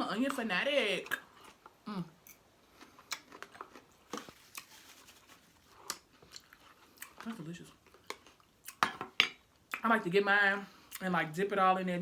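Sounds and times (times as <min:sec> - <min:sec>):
person chewing food: 0:01.0 - 0:08.8.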